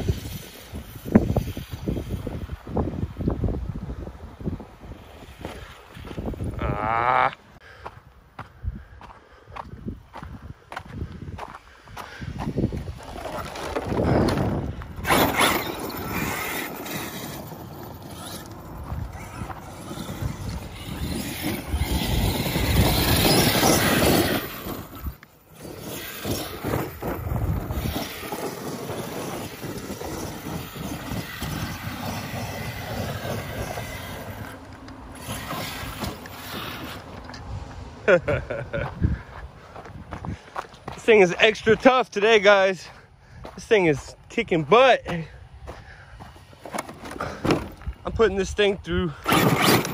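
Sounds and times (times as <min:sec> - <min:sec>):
rc truck electric motor whining: 0:00.0 - 0:07.1, 0:12.5 - 0:37.8, 0:49.1 - 0:49.9.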